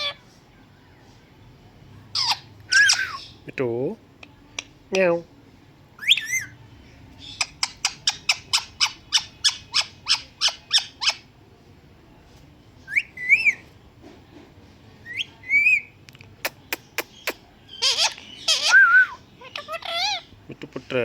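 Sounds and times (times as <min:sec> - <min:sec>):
parrot calling: 0:00.0 - 0:00.2, 0:02.1 - 0:03.4, 0:06.0 - 0:06.6, 0:07.3 - 0:11.3, 0:12.9 - 0:13.6, 0:15.0 - 0:15.9, 0:17.0 - 0:20.4.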